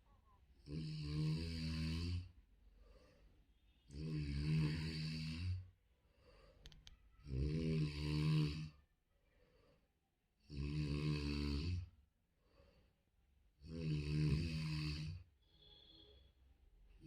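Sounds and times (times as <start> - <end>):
person snoring: 0.6 - 3.0, 3.9 - 5.7, 7.2 - 8.8, 10.4 - 12.0, 13.6 - 15.9
faint breathing: 2.4 - 3.8, 5.6 - 7.2, 9.1 - 10.2, 12.3 - 13.4, 15.4 - 17.0.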